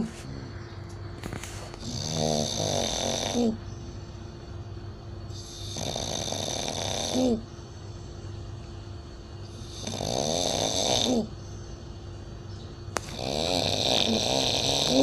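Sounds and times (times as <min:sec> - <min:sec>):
loud rattling snores: 0:01.8 - 0:03.6, 0:05.4 - 0:07.4, 0:09.6 - 0:11.3, 0:13.0 - 0:15.0.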